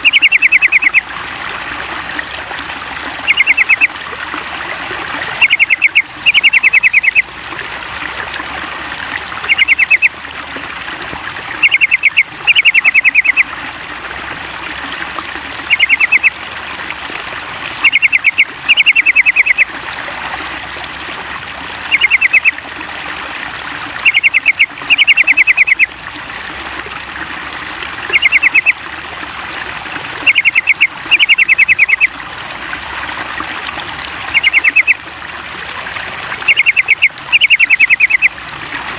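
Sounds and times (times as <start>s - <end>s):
bird chattering calls: 0.0s - 1.0s, 3.3s - 3.9s, 5.4s - 7.2s, 9.5s - 10.1s, 11.6s - 13.4s, 15.7s - 16.3s, 17.8s - 19.6s, 21.9s - 22.5s, 24.0s - 25.9s, 28.1s - 28.8s, 30.2s - 32.1s, 34.3s - 35.0s, 36.4s - 38.3s
running water trickling: 0.0s - 38.9s.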